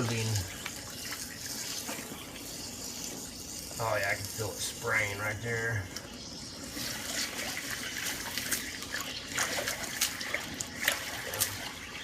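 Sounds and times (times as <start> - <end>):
water spraying from a pipe: 0.0 - 12.0
water splashing: 6.6 - 12.0.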